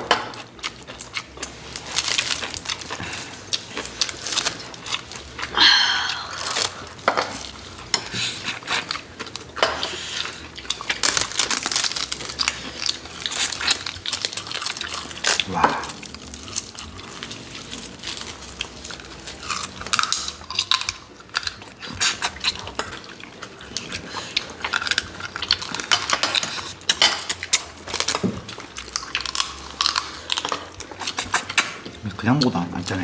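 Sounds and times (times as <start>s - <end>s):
chewing and biting: 0.2s - 33.0s
utensils clicking against dishes: 6.8s - 16.0s, 23.8s - 33.0s.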